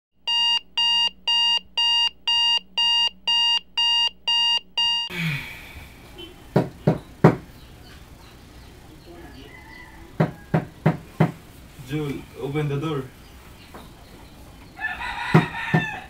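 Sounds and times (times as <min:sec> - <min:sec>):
electronic alarm beeping: 0:00.3 - 0:05.1
knocks on a door: 0:06.5 - 0:07.5, 0:10.2 - 0:11.4, 0:15.3 - 0:15.9.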